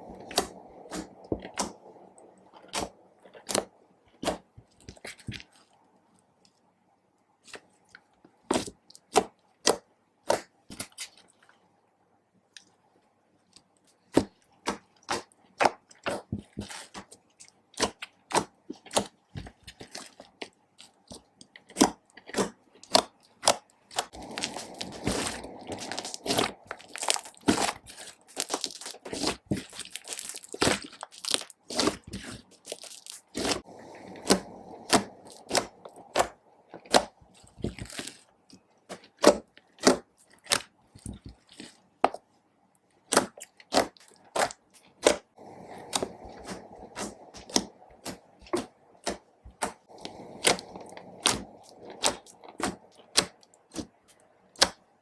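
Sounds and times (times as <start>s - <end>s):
slime sticky pops and squishing: 0.2s - 1.8s, 2.6s - 5.5s, 14.0s - 38.3s, 43.0s - 54.8s.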